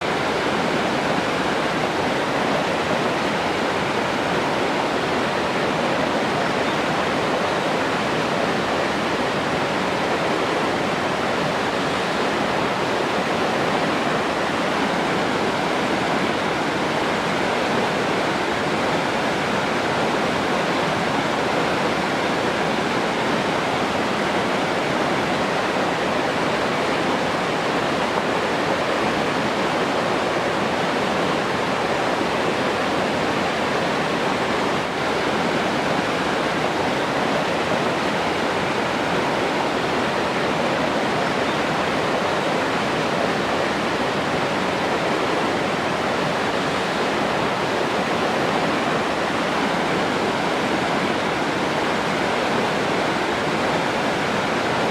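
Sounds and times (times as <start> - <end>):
running water rushing: 0.0 - 54.9.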